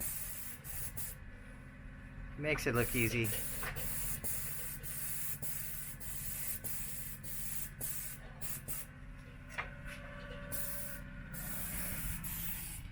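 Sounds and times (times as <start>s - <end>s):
spray gun hissing: 0.0s - 1.1s, 2.8s - 8.9s, 10.5s - 12.8s
paint sprayer engine hum: 0.0s - 1.6s, 2.8s - 12.9s.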